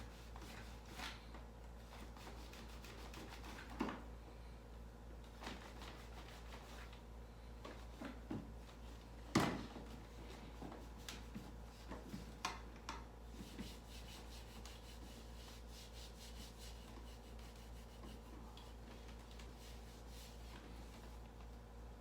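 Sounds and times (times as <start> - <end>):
low electrical hum: 0.0 - 22.0
quick rubbing strokes: 13.4 - 18.6.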